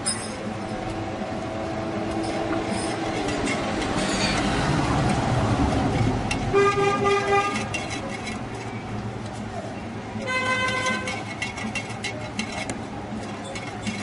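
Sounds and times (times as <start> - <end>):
vehicle horn: 6.5 - 7.8, 10.2 - 11.2.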